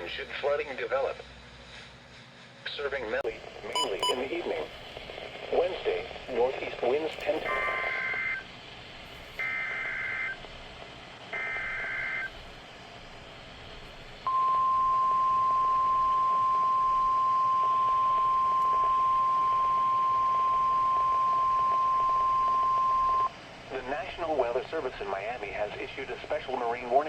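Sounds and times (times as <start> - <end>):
steady warning alarm tone: 3.8 - 4.2.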